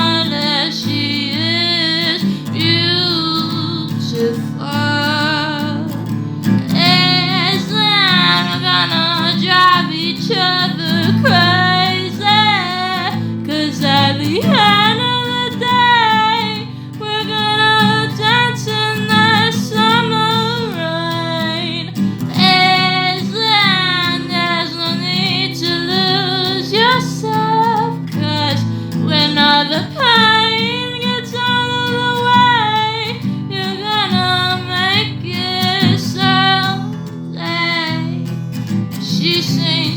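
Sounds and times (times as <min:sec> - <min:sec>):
woman singing with vibrato: 0:00.0 - 0:38.3, 0:39.0 - 0:39.9
guitar: 0:00.0 - 0:39.9.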